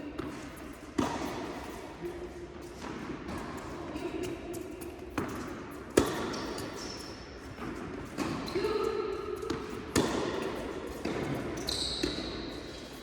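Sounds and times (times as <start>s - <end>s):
tennis ball bouncing on court: 9.4s - 12.4s.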